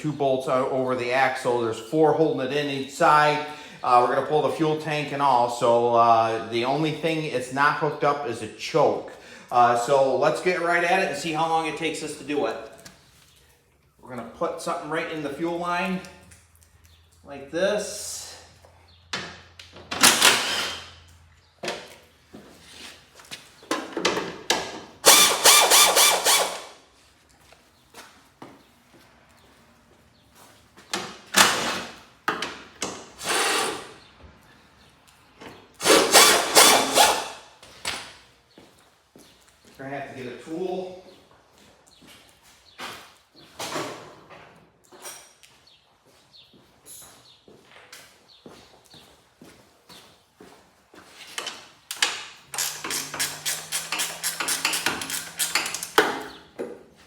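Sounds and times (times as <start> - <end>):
tools scraping and rasping on metal: 52.4 - 56.4.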